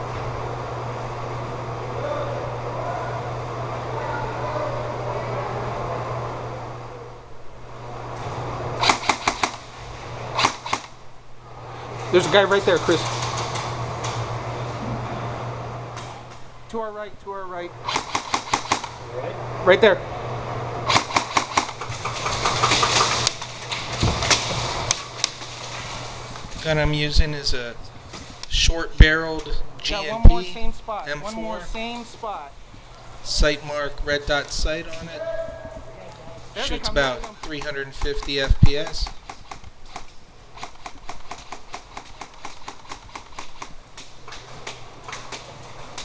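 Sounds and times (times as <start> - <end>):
steady low hum: 0.0 - 46.0
airsoft gunfire cracks: 8.8 - 9.7, 10.4 - 11.0, 17.9 - 19.0, 20.9 - 23.4
airsoft guns firing: 8.8 - 11.0, 17.8 - 19.0, 20.9 - 25.3, 37.0 - 43.8
pellets striking hard surfaces: 21.1 - 24.4.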